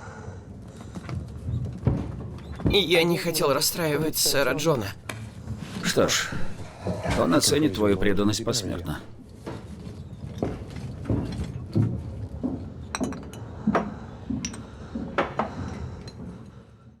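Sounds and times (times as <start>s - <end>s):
light clinks and knocks: 10.4s - 16.3s.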